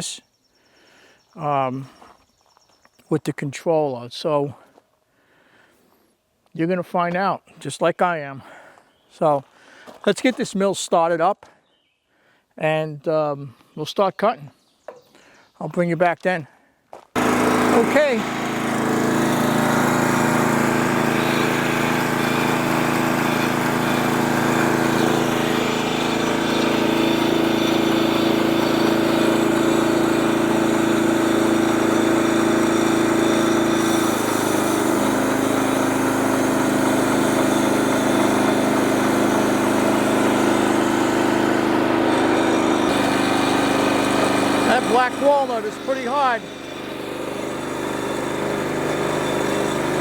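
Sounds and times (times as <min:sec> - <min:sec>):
saw blade cutting log: 0:17.2 - 0:50.0
sawmill engine running under load: 0:17.2 - 0:50.0.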